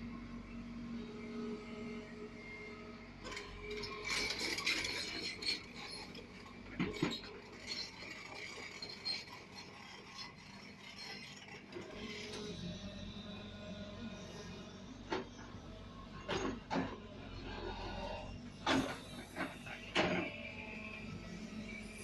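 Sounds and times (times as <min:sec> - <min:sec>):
excavator engine hum: 0:00.0 - 0:22.0
metallic clanking and scraping: 0:03.2 - 0:12.6, 0:16.2 - 0:20.6.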